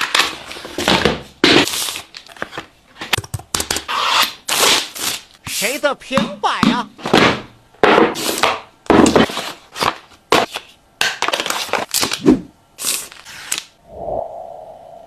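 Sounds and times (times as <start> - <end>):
cardboard and plastic rustling: 8.2 - 12.2.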